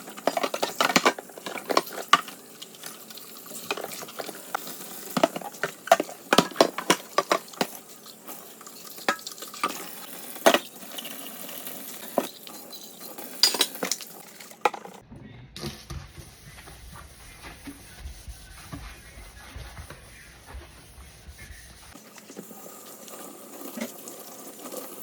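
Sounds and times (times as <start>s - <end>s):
dishes and cutlery clinking: 0.0s - 11.3s, 12.0s - 15.0s.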